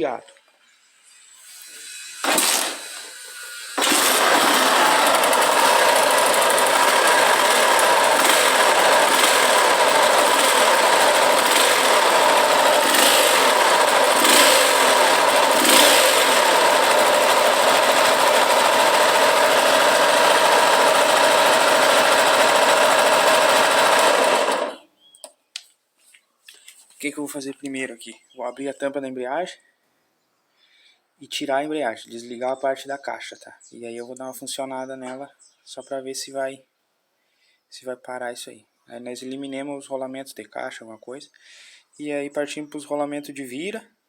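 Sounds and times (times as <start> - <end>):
motorcycle engine idling: 3.7 - 24.8.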